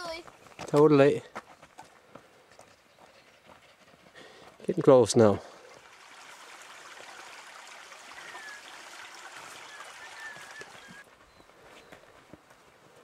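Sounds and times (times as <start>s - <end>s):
faint high chirps: 8.1s - 8.9s, 9.5s - 12.0s.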